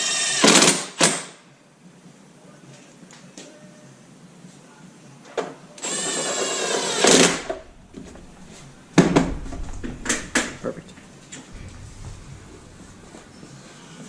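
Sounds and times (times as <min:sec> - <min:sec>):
loud burst: 0:07.0 - 0:13.9.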